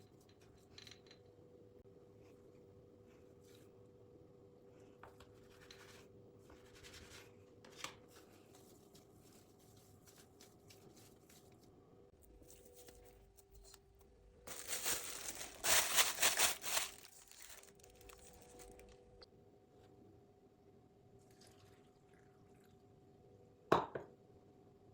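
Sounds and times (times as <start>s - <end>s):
kitchen handling noises: 14.5s - 18.9s
loud rustling crinkle: 14.5s - 19.2s.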